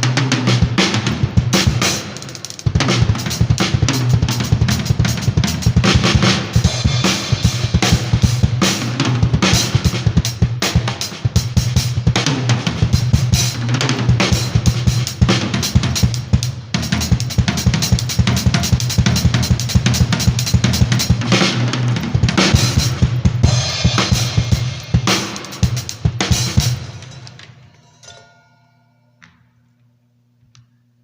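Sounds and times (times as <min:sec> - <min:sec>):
drum kit playing fast: 0:00.0 - 0:27.7.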